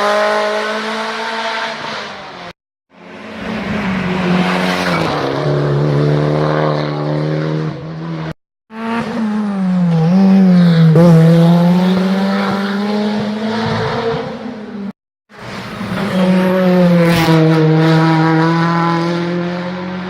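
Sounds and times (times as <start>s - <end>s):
race car engine at high revs: 0.0s - 20.0s.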